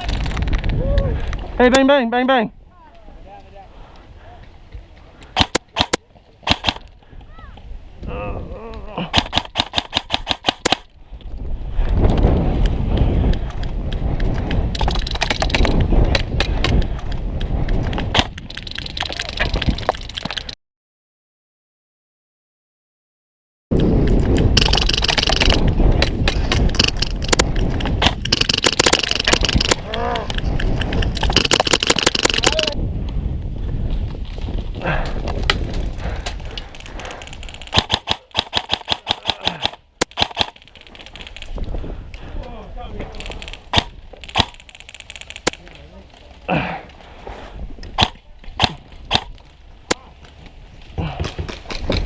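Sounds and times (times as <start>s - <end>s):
sharp cracks and snaps: 0.0s - 1.8s, 5.2s - 7.6s, 8.7s - 11.0s, 12.1s - 20.6s, 23.8s - 32.8s, 34.2s - 42.2s, 43.1s - 46.4s, 47.8s - 50.6s
gear and movement rustle: 33.4s - 37.8s, 40.3s - 52.0s.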